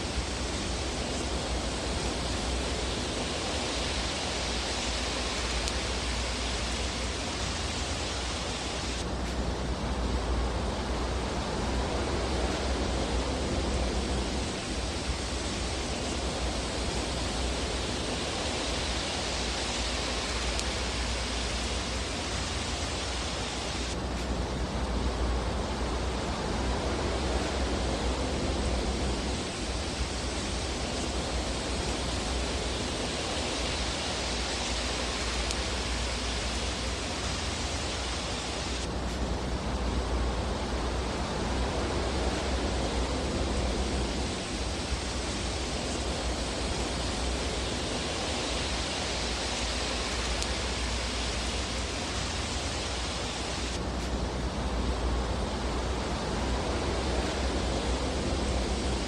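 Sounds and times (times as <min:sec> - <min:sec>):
fire hissing: 0:00.0 - 0:59.0.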